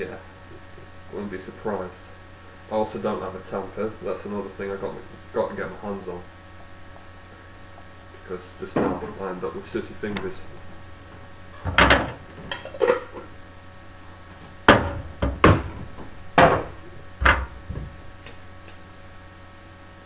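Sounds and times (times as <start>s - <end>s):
laptop fans humming: 0.0s - 20.0s.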